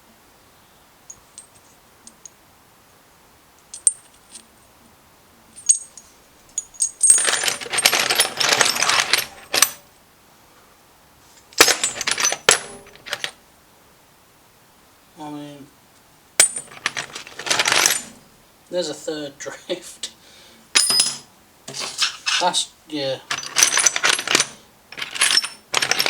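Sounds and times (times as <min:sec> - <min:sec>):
steel tool bits clattering in a box: 0:05.6 - 0:09.8, 0:11.6 - 0:13.4, 0:16.4 - 0:18.2, 0:20.8 - 0:22.6, 0:23.2 - 0:26.0.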